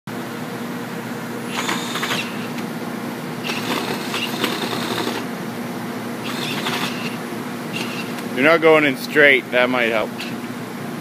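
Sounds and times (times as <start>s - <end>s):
steady low hum: 0.1s - 11.0s
cordless drill whining: 1.5s - 2.6s, 3.4s - 5.2s, 6.2s - 8.2s.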